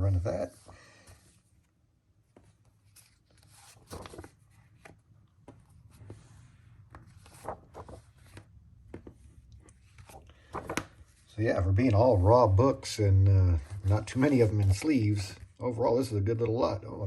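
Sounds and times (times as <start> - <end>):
paper pages rustling: 0.4 - 12.4, 13.4 - 15.6
light taps of comic books: 8.3 - 9.3.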